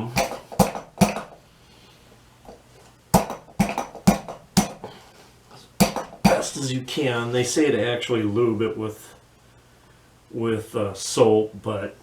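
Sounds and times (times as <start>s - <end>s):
bead breaker metal knocks: 0.0s - 1.4s, 3.2s - 4.9s, 5.8s - 6.6s.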